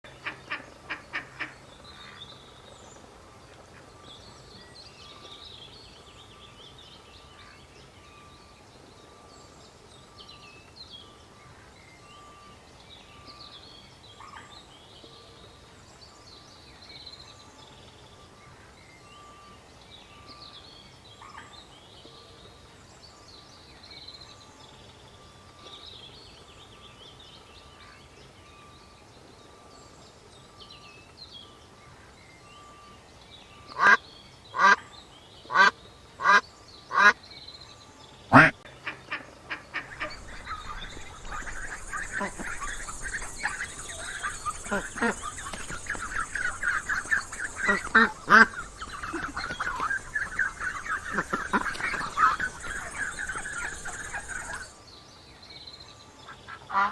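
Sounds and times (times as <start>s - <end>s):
duck quacking: 0.2s - 1.6s, 33.8s - 34.0s, 34.6s - 34.8s, 35.5s - 37.2s, 38.3s - 54.7s, 56.6s - 56.9s
ducklings peeping: 38.3s - 54.8s.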